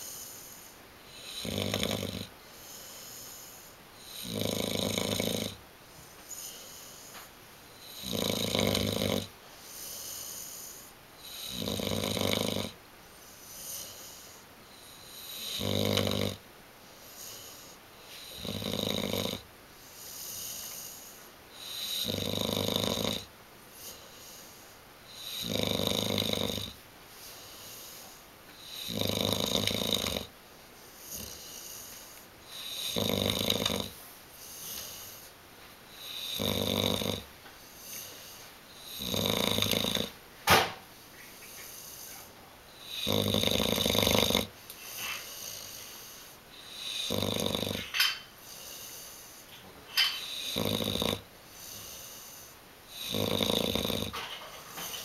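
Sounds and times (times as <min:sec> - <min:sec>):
dog snoring: 0:00.0 - 0:05.6, 0:06.3 - 0:30.3, 0:31.0 - 0:35.3, 0:35.9 - 0:40.2, 0:41.6 - 0:55.0
dog breathing softly: 0:41.2 - 0:43.1.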